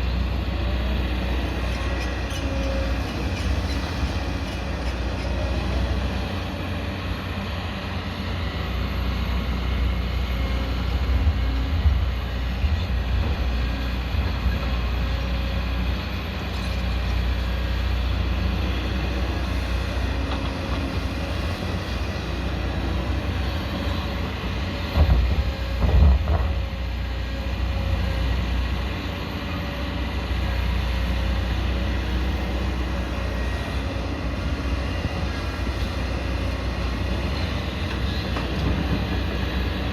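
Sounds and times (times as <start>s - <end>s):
excavator diesel engine running: 0.0s - 39.9s.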